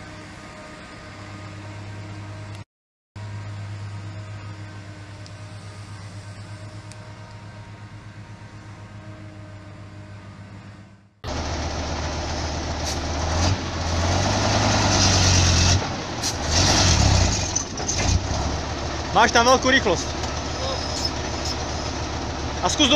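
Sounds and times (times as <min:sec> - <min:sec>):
diesel engine idling: 0:11.3 - 0:22.9
rough engine running hard: 0:11.3 - 0:22.9.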